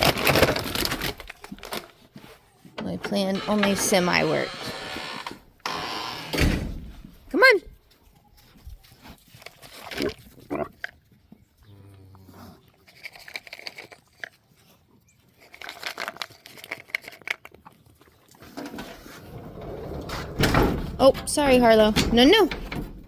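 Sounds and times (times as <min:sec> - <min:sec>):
rustling and crunching: 0:00.0 - 0:02.8, 0:06.9 - 0:21.8.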